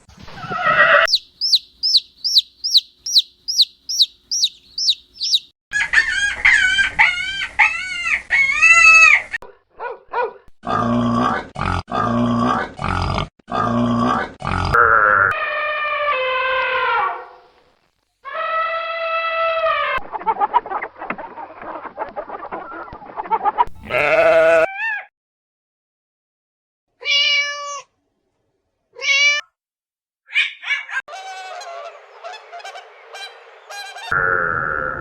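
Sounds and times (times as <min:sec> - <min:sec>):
short animal calls: 0:00.3 - 0:05.4, 0:23.8 - 0:24.7.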